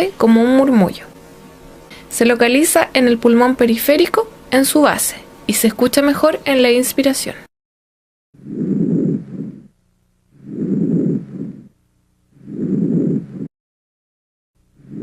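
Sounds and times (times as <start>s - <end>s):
breath sounds through stethoscope: 8.4s - 9.7s, 10.4s - 11.8s, 12.4s - 13.5s.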